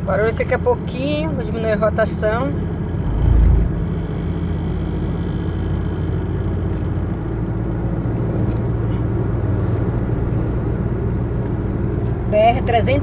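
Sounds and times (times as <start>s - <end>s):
engine and road noise: 0.0s - 13.0s
low engine drone: 2.3s - 6.6s.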